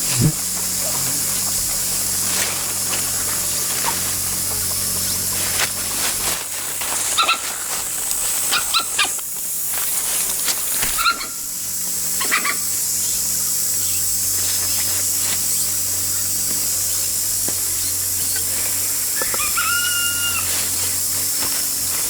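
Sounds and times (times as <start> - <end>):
steady hiss: 0.0 - 22.0
high-pitched animal calls: 7.1 - 7.5, 12.2 - 12.6, 19.1 - 20.9.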